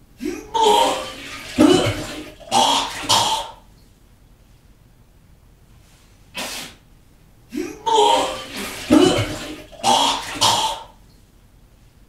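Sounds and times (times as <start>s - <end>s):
person coughing: 0.2s - 3.6s, 7.6s - 10.9s.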